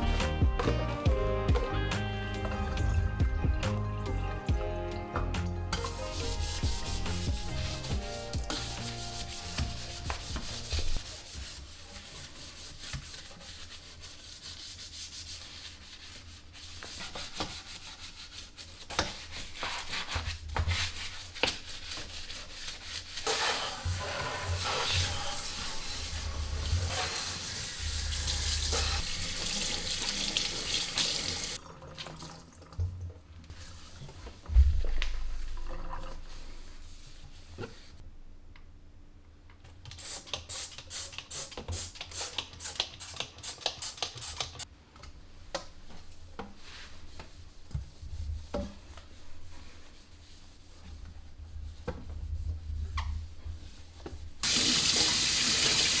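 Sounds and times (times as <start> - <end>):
rubbing and scrubbing: 5.8 - 29.6, 33.5 - 38.0, 45.9 - 55.9
water running from a tap: 23.3 - 32.8, 54.4 - 56.0.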